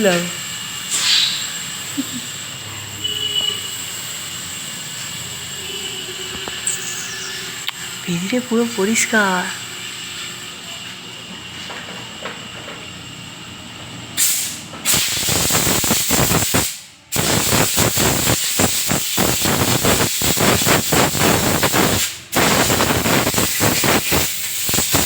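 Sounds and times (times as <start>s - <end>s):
pressurised spray hissing: 0.0s - 7.6s, 14.2s - 25.0s.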